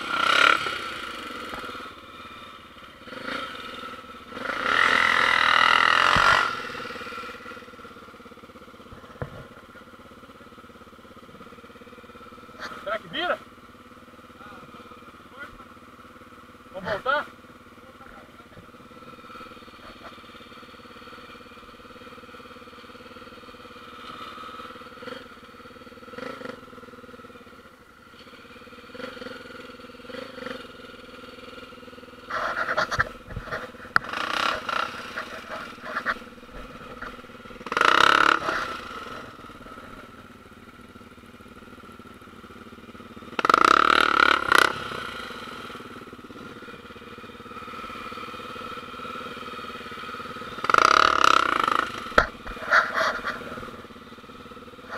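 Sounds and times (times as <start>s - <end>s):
motorcycle engine running: 0.0s - 54.9s
loud engine bursts: 4.3s - 7.4s, 32.3s - 40.0s, 43.3s - 45.8s, 50.5s - 53.7s.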